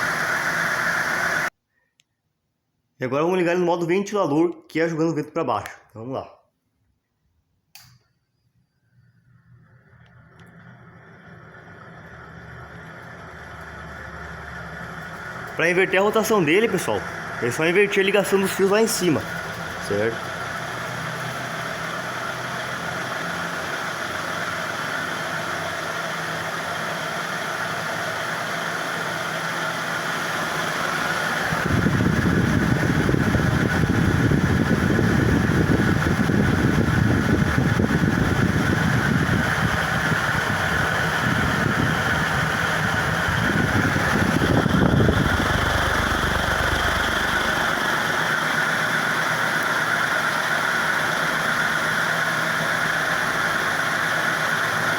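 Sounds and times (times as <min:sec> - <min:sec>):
ceiling fan motor hum and whine: 0:00.0 - 0:02.0, 0:07.7 - 0:54.9
low rushing of air: 0:31.4 - 0:48.5.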